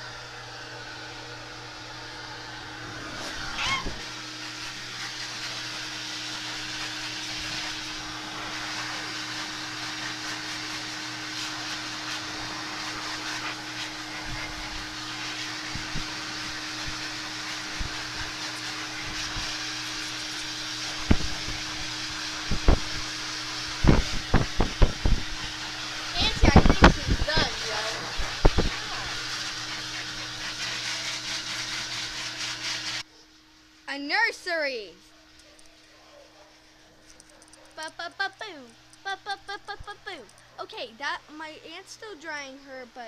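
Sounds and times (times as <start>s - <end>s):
hair dryer running: 0.0s - 33.1s.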